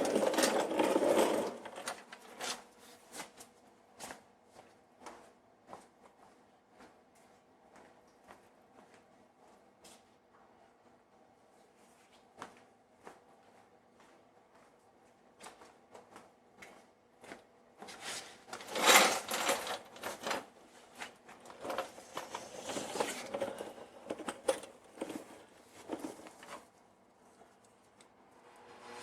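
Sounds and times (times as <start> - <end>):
metal wrenches clicking and clattering: 18.6 - 20.5, 21.4 - 26.5.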